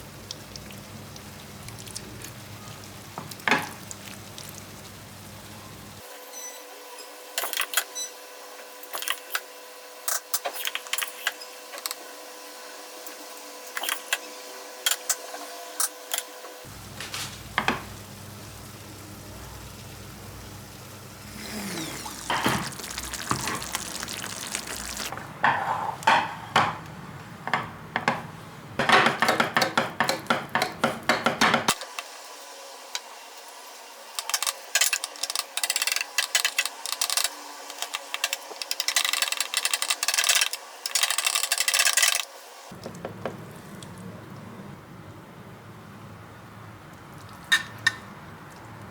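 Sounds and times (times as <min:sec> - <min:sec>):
utensil knocking against pots: 0:27.5 - 0:31.8.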